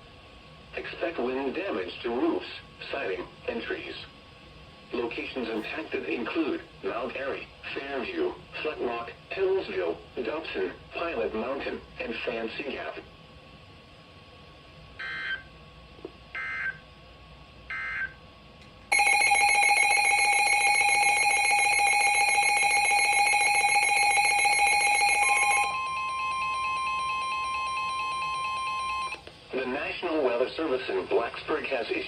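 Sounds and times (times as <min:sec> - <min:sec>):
harsh electronic alert tone: 0:18.9 - 0:29.2.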